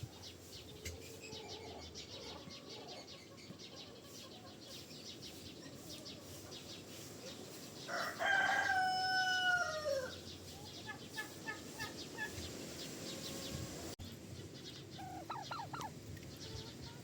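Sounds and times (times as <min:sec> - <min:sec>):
rooster crowing: 0:07.9 - 0:10.2.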